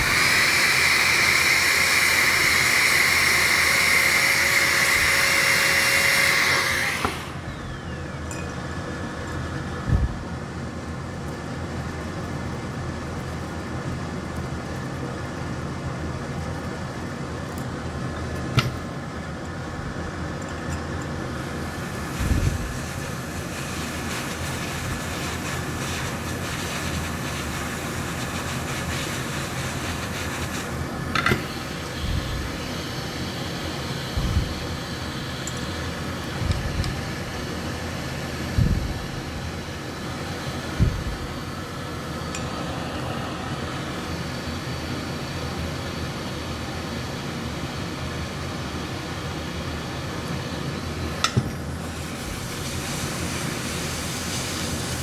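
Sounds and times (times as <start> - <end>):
electric blower whining: 0.0 - 8.9, 21.4 - 46.4
steady fan noise: 0.0 - 55.0.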